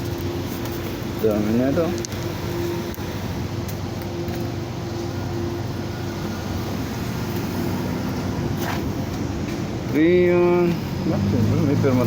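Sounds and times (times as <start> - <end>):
mechanical hum: 0.0 - 12.0.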